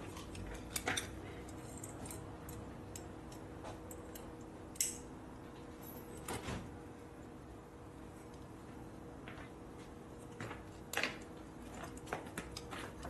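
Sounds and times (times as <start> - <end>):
faint steady hum: 0.0 - 13.0
clicks of small hardware: 1.8 - 5.0.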